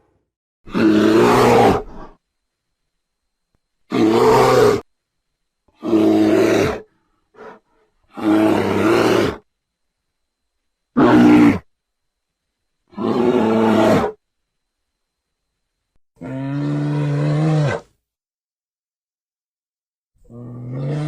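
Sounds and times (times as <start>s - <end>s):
dinosaur calls: 0.7s - 2.2s, 7.4s - 9.4s, 11.0s - 11.7s, 12.9s - 14.2s.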